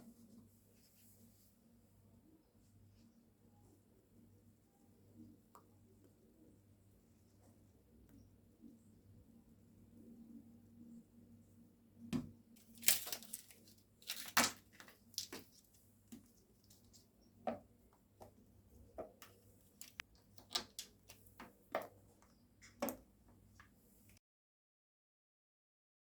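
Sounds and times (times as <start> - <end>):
rustling: 12.6 - 17.1.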